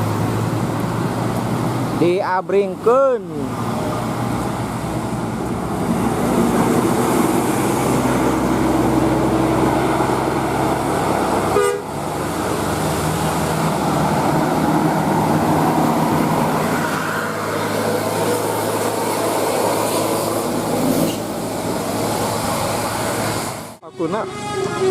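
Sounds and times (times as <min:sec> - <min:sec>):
bus engine running: 0:00.0 - 0:24.9
multi-tone bus horn: 0:11.4 - 0:12.0, 0:24.2 - 0:24.9.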